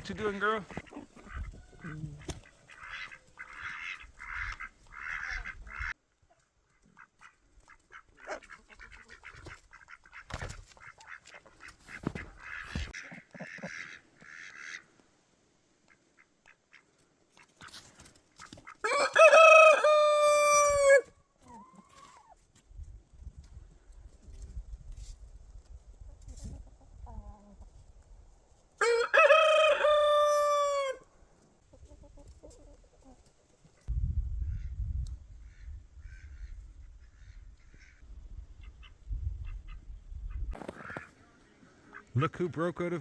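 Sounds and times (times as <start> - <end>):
rooster crowing: 18.8 - 21.1, 28.8 - 31.0.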